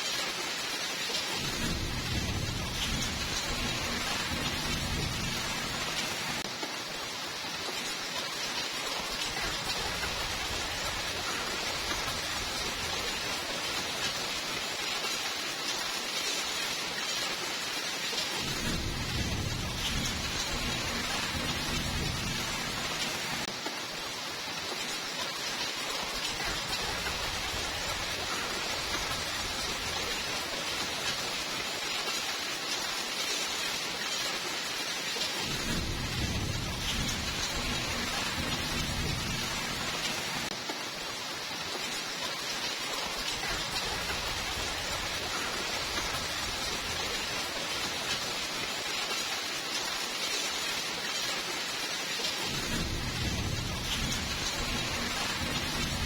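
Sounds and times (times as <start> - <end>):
steady rain falling: 0.0 - 56.0
low thunder rumble: 1.4 - 6.4, 18.4 - 23.4, 35.4 - 40.5, 52.5 - 56.0.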